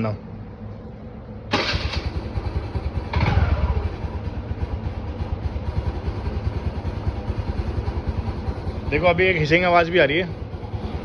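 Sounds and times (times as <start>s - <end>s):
electric starter cranking: 1.5s - 2.4s
scooter engine revving and idling: 1.5s - 11.0s.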